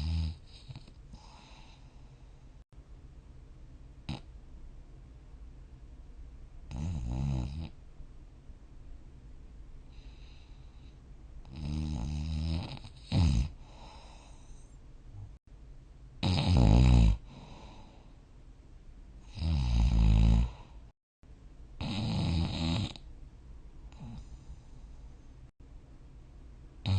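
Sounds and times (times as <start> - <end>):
person snoring: 0.0 - 1.9, 11.5 - 14.5, 16.2 - 18.0, 19.2 - 20.8, 21.8 - 23.0
faint breathing: 0.5 - 2.6, 9.8 - 11.1, 13.6 - 15.4, 17.2 - 18.3, 23.9 - 25.5.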